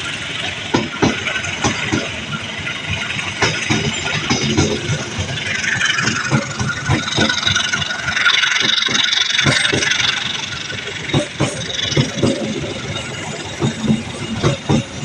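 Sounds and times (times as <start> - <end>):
vehicle engines running: 9.7 - 15.0
steady rushing noise: 10.4 - 15.0.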